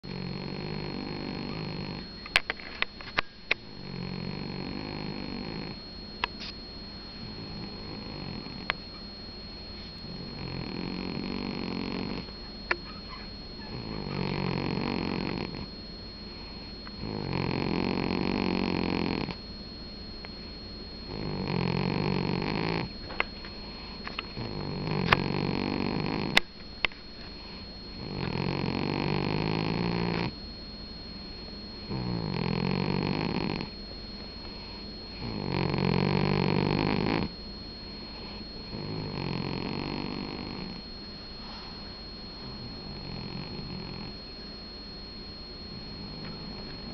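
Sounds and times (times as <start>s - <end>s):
cat snoring: 0.0s - 2.1s, 3.8s - 5.8s, 7.2s - 8.8s, 10.0s - 12.3s, 13.6s - 15.7s, 16.3s - 19.4s, 21.1s - 23.0s, 23.6s - 26.4s, 27.5s - 30.4s, 31.9s - 33.8s, 34.5s - 37.4s, 38.0s - 40.8s, 42.4s - 44.2s.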